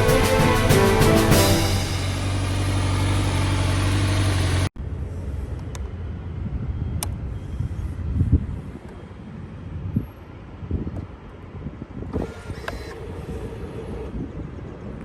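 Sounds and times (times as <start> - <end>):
motorcycle engine idling: 1.5 - 4.7.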